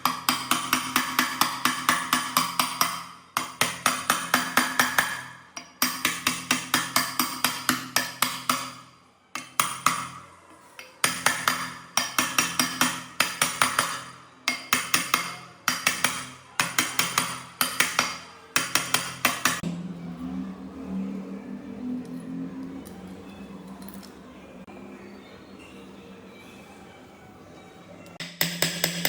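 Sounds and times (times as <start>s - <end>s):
hammer striking metal: 0.0s - 19.8s, 28.2s - 29.0s.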